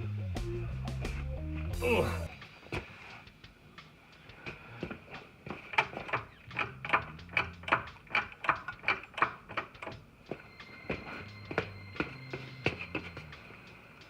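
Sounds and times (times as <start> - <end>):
sharp evenly spaced clicks: 3.4 - 10.7.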